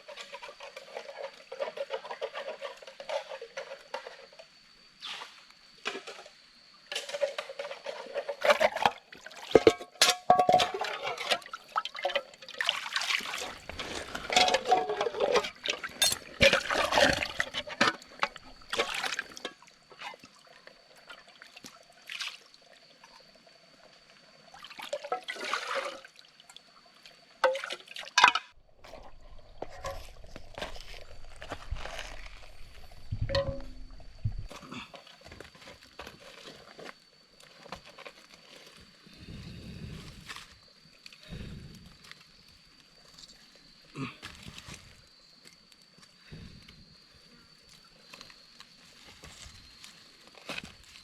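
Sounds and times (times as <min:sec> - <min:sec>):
water pouring and sloshing: 0:06.9 - 0:38.8.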